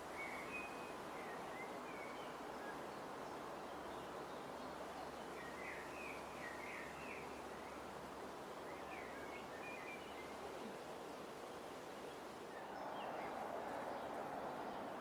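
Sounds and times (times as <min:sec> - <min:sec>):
outdoor background hiss: 0:00.0 - 0:15.0.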